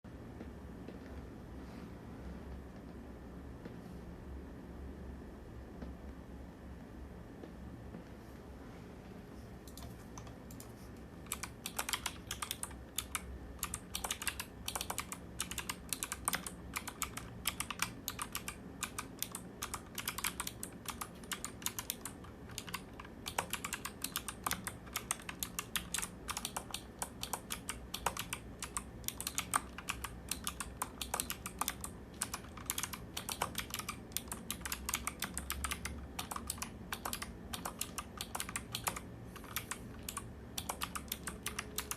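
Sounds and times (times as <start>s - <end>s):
clicky mechanical keyboard typing: 9.6s - 41.9s.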